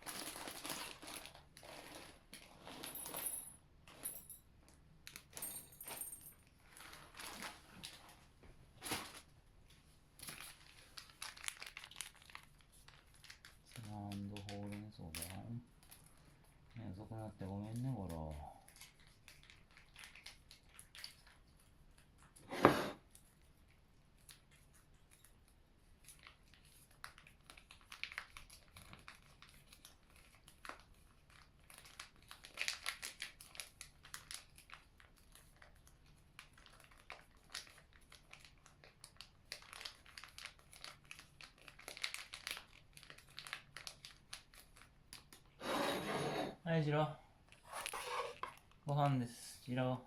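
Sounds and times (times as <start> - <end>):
packaging crinkling: 0.0 - 3.0, 6.6 - 8.2, 8.8 - 9.3, 10.2 - 16.1, 26.2 - 45.5.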